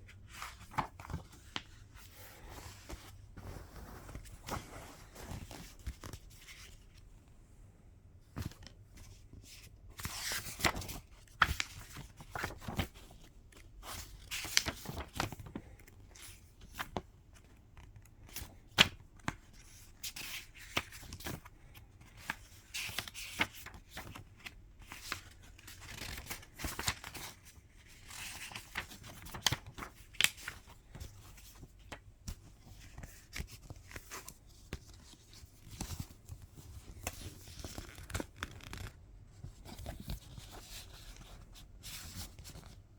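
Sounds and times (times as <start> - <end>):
paper and plastic rustling: 0.3 - 6.8, 8.4 - 17.0.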